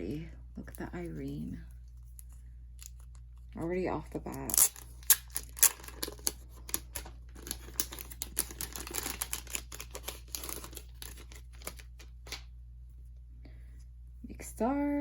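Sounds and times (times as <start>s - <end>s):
crinkly packaging rustling: 4.3s - 12.5s.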